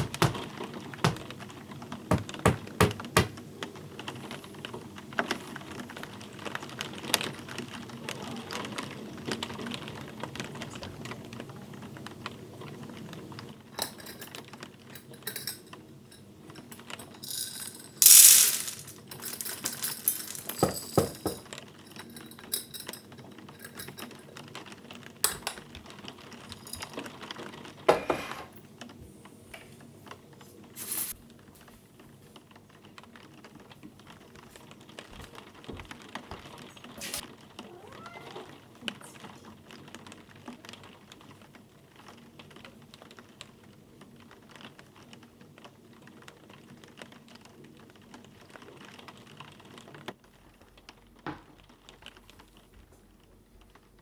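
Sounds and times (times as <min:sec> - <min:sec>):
sharp knock: 0:00.0 - 0:00.4
small hard objects clicking: 0:00.0 - 0:00.4, 0:17.0 - 0:21.4.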